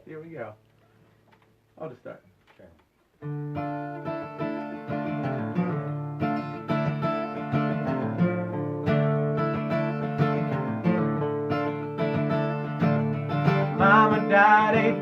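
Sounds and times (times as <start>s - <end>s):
acoustic guitar chords: 3.2s - 15.0s.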